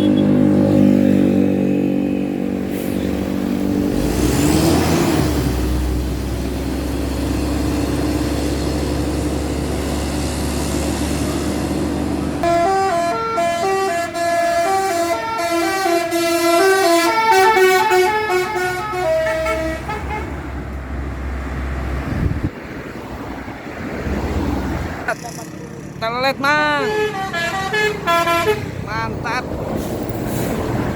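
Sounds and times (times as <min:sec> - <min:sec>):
multi-tone bus horn melody: 0:00.0 - 0:00.6, 0:12.4 - 0:20.5, 0:26.5 - 0:29.2
diesel bus engine running: 0:01.9 - 0:30.9.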